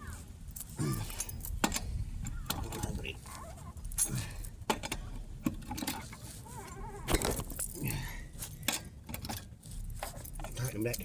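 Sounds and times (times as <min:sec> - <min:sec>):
metal tools clinking and knocking: 0:00.5 - 0:03.0, 0:08.6 - 0:11.0.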